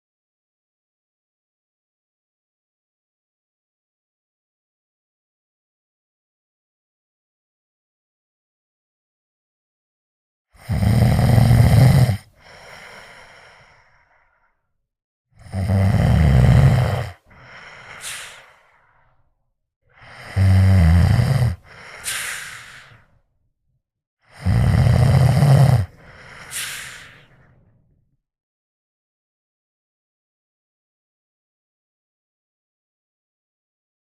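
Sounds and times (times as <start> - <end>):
person snoring: 10.6 - 14.2, 15.4 - 19.1, 19.9 - 23.2, 24.2 - 27.6
quiet breath: 12.1 - 14.7, 16.6 - 23.3, 25.7 - 27.9.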